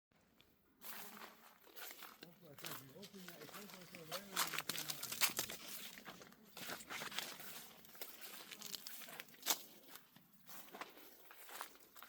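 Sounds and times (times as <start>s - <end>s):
dry maize leaves rustling: 0.8s - 12.0s
stalk snapping: 2.6s - 5.9s.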